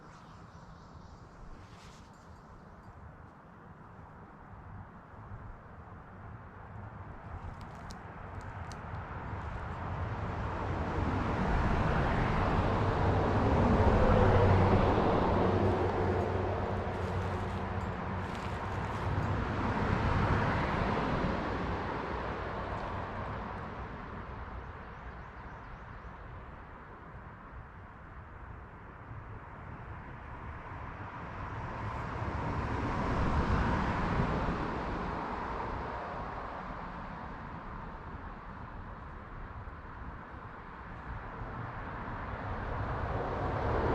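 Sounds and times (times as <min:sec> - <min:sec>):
vehicle passing by: 0:10.8 - 0:22.1.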